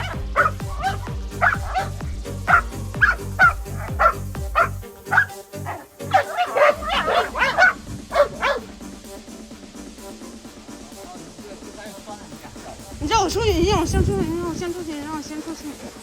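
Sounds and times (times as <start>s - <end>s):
dog barking and yipping: 0.0s - 8.8s
background music with bass beat: 0.0s - 16.0s.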